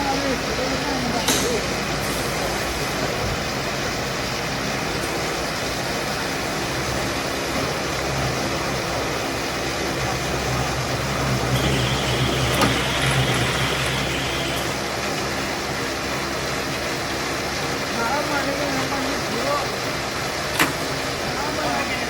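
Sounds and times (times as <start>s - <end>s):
machine engine droning: 2.3s - 16.8s.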